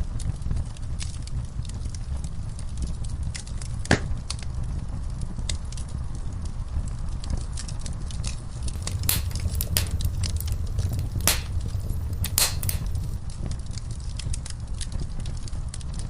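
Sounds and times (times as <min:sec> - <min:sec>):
low rumble of flames: 0:04.6 - 0:16.0
embers popping: 0:08.6 - 0:13.2
fire crackling: 0:08.6 - 0:13.2.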